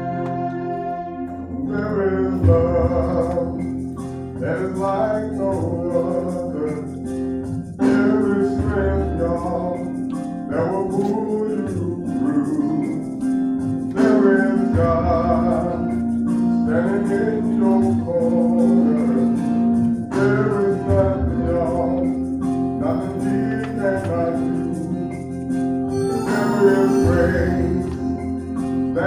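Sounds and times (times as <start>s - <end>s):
gospel singing with band: 0.0s - 3.8s, 13.9s - 22.2s, 22.8s - 25.2s, 25.9s - 29.0s.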